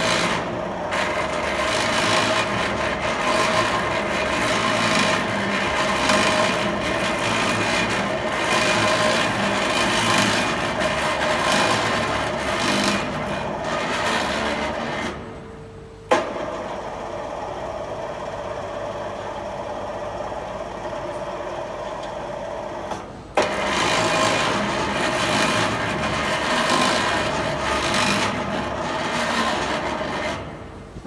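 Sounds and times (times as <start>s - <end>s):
electric hoist running: 0.0s - 31.0s.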